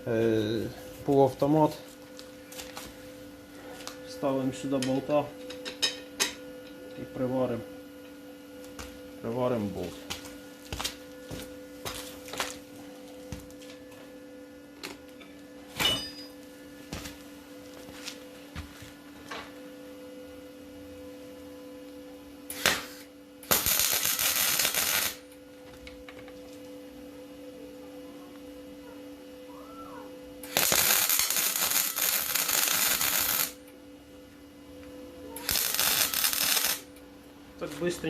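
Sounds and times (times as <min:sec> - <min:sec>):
steady hum: 0:00.0 - 0:38.0
welder arc crackle: 0:22.5 - 0:25.4, 0:30.4 - 0:33.7, 0:35.4 - 0:37.0.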